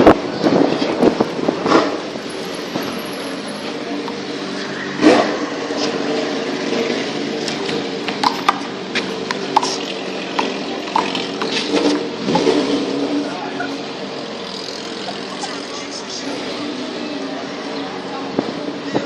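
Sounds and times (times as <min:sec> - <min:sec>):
traffic hum: 0:00.0 - 0:19.0.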